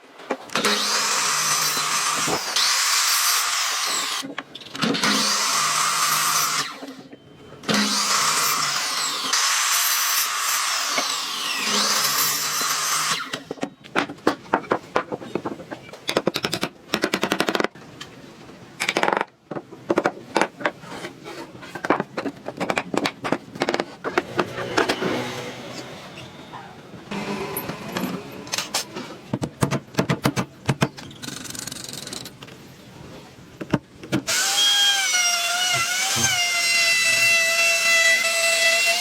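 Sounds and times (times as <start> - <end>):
power tool hissing: 27.1 - 28.8.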